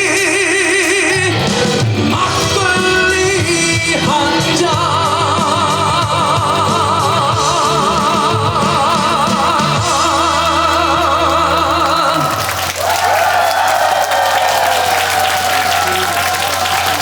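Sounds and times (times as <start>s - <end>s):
crowd applauding: 0.0s - 17.0s.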